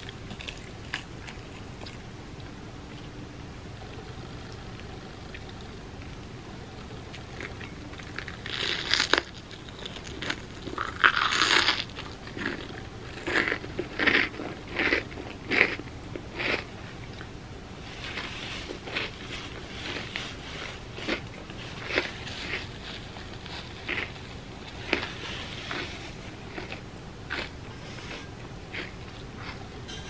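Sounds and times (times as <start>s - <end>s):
crunching of fried bread being chewed: 0.0s - 3.1s, 3.8s - 29.7s.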